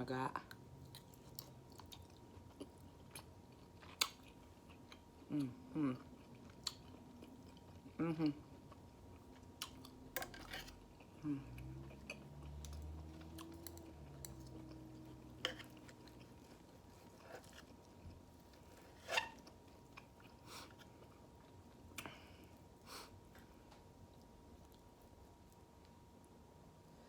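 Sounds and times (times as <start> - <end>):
chewing steak: 0.8 - 22.6
person humming mmm: 11.2 - 11.8.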